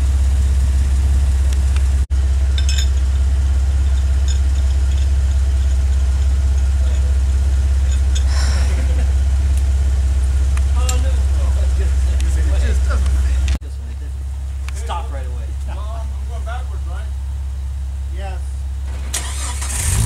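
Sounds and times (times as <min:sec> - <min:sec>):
engine running at low revs: 0:00.0 - 0:20.0
faint clinks: 0:02.5 - 0:08.4.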